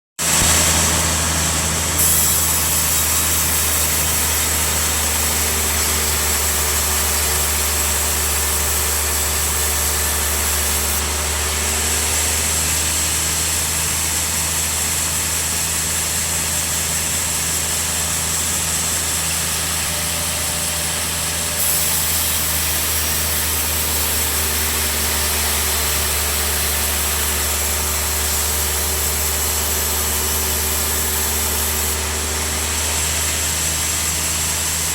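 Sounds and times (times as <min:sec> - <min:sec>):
bandsaw hum: 0:00.2 - 0:34.9.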